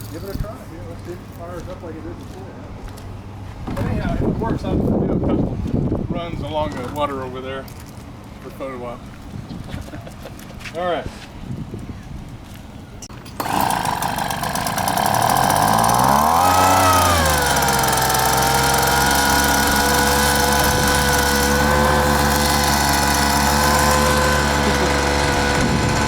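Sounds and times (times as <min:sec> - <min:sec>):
leaf blower engine running: 0:13.1 - 0:26.0.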